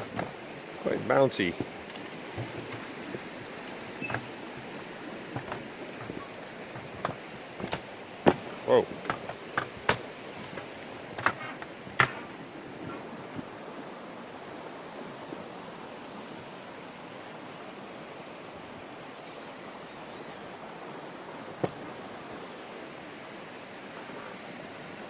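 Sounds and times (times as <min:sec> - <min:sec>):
river water rushing: 0:00.0 - 0:25.0
sharp knocks: 0:04.0 - 0:13.5.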